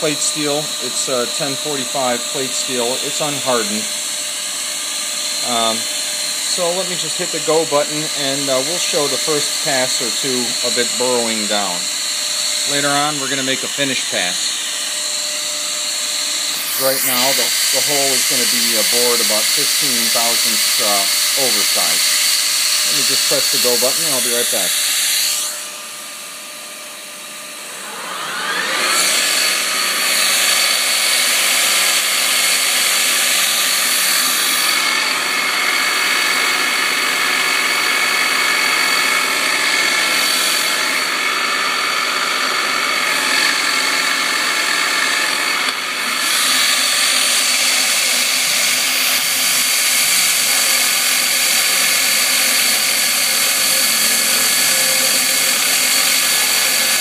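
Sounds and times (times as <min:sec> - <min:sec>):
end mill cutting steel: 0:00.0 - 0:57.0
mill spindle whine: 0:00.0 - 0:57.0.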